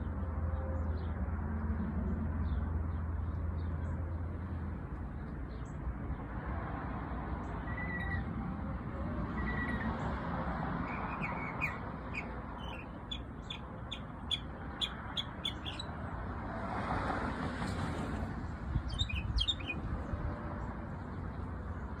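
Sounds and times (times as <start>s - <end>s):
bird chirping: 10.8s - 15.9s, 18.9s - 19.8s.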